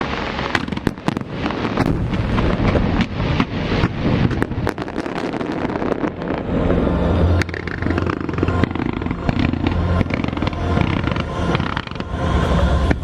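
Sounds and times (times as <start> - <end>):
continuous rumble: 0.0 - 13.0
fireworks bangs and crackles: 0.0 - 13.0.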